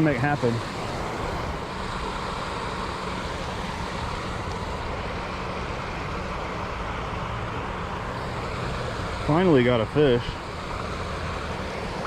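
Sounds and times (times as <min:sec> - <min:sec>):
creek water rushing over rocks: 0:00.0 - 0:04.9.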